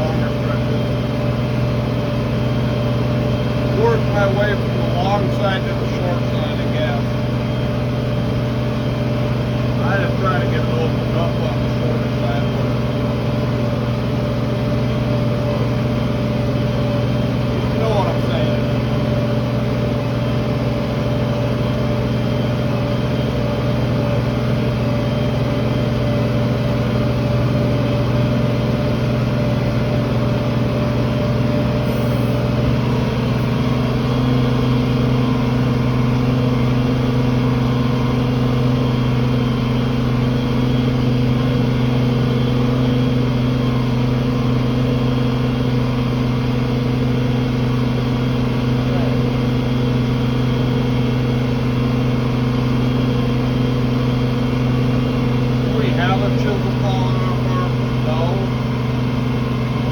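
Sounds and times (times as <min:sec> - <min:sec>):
tractor engine running under load: 0:00.0 - 0:59.9.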